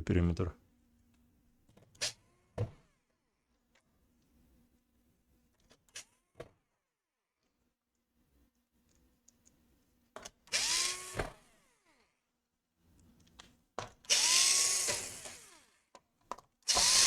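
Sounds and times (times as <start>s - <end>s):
electric screwdriver spinning: 10.5s - 12.1s, 14.1s - 15.9s, 16.7s - 17.0s.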